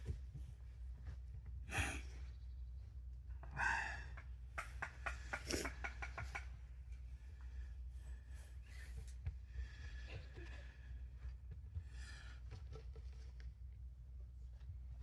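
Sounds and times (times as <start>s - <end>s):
breathy exhales: 3.6s - 4.1s.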